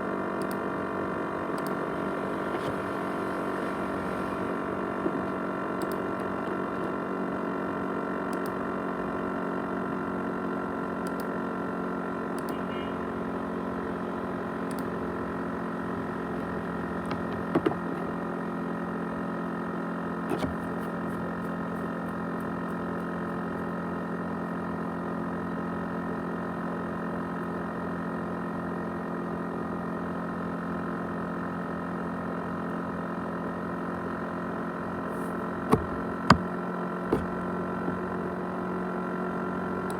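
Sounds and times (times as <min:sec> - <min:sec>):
laptop fan droning whine: 0:00.0 - 0:39.9
short clicks: 0:00.4 - 0:00.6, 0:05.8 - 0:06.0, 0:11.0 - 0:11.3.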